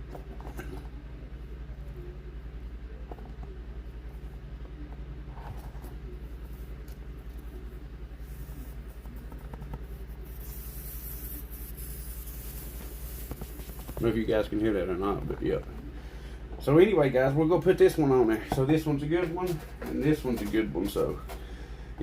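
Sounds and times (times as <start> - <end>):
steady low hum: 0.0 - 22.0
air hissing from tire: 10.4 - 14.0.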